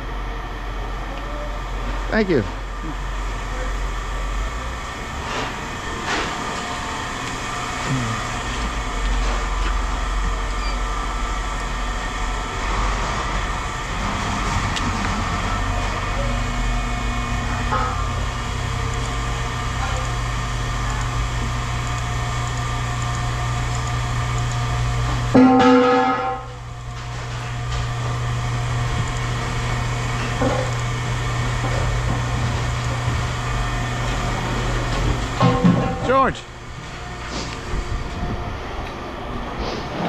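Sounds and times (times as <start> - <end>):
large engine running: 0.0 - 40.0
short knocks and clanks: 34.9 - 36.2.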